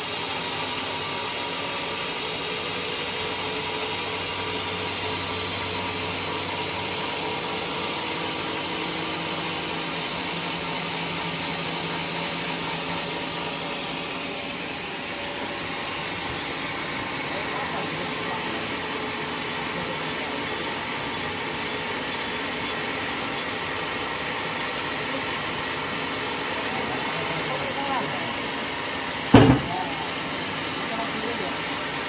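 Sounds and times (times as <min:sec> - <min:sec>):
woodworking machine whine and hum: 0:00.0 - 0:32.0.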